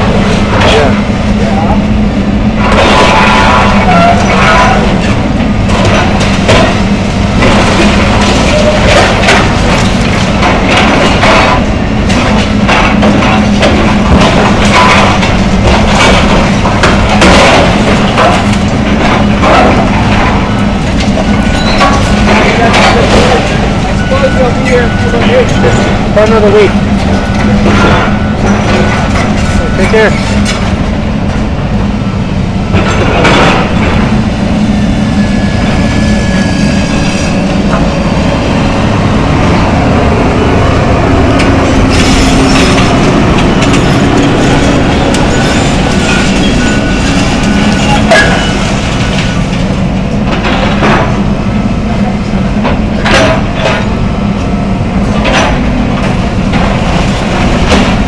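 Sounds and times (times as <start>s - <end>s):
excavator engine drone: 0.0s - 58.0s
loud crashes: 2.5s - 31.5s, 32.6s - 34.2s
falling debris: 2.6s - 30.9s, 32.7s - 34.2s
wood cracking and splintering: 2.6s - 31.4s.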